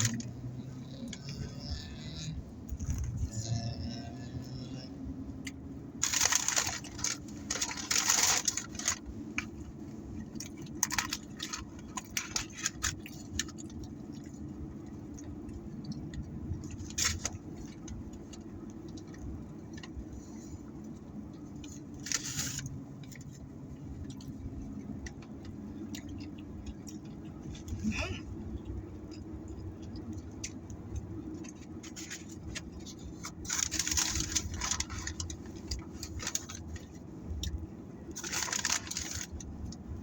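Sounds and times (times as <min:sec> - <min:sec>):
car interior hum: 0:00.0 - 0:40.0
food packaging crinkling: 0:06.0 - 0:09.5, 0:10.2 - 0:14.3, 0:21.6 - 0:23.4, 0:31.4 - 0:37.0, 0:38.2 - 0:39.4.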